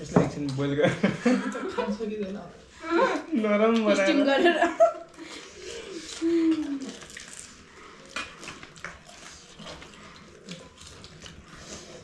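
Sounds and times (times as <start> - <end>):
people chewing crunchy food: 5.0 - 12.0.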